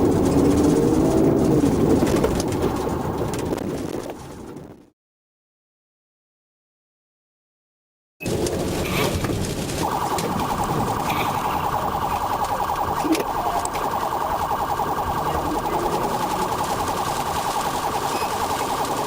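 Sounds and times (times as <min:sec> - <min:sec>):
road noise: 0:00.0 - 0:04.6, 0:08.3 - 0:19.0
police siren warbling: 0:09.8 - 0:19.0.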